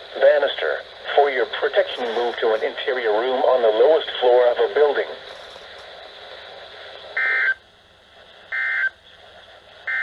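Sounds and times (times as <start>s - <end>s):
radio hiss: 0.0s - 10.0s
buzzy digital bursts: 1.6s - 3.6s.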